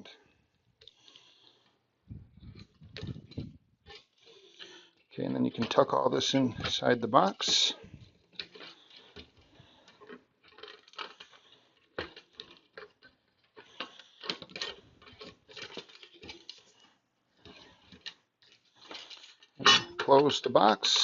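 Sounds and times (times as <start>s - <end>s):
wires rustling and clicking: 0.8s - 21.0s.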